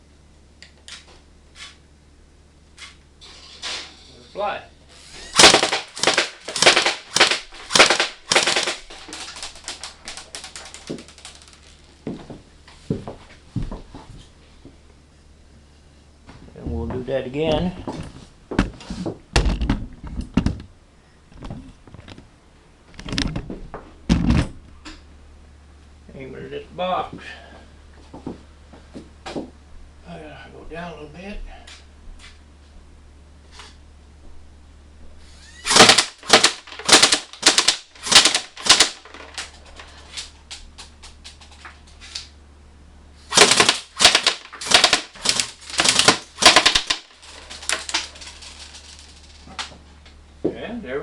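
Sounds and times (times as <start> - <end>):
brief mechanical whirs: 4.9 - 5.5
airsoft gun firing bursts: 5.3 - 10.6, 35.7 - 39.2, 43.3 - 48.1.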